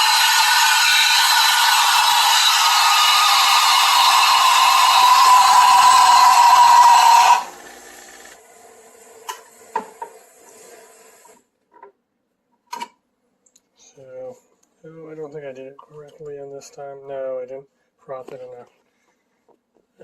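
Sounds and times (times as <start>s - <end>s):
steam wand frothing milk: 0.0s - 11.4s.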